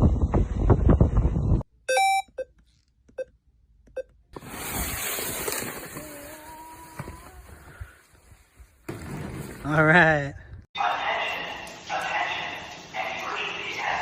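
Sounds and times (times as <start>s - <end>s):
electronic beep: 1.9s - 2.5s.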